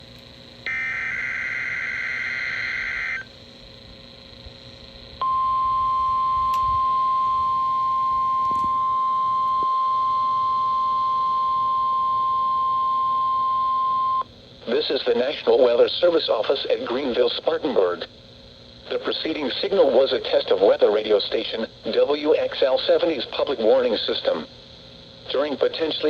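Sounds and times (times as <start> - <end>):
steady warning alarm tone: 0.6 - 3.3, 5.2 - 14.3
digital header tones: 0.7 - 3.2.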